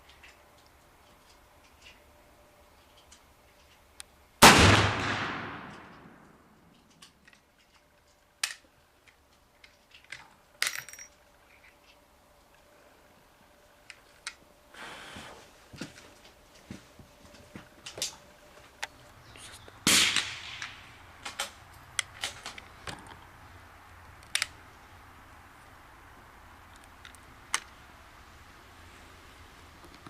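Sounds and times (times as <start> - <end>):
rifle shot: 4.4 - 6.6, 19.8 - 21.6
sharp metallic clicks: 24.1 - 24.6.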